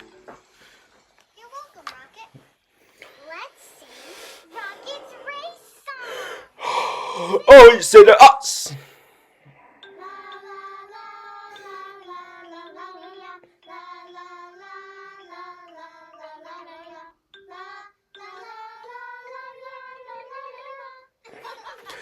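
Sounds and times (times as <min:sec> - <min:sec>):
high cartoon voice singing: 0:07.2 - 0:08.8.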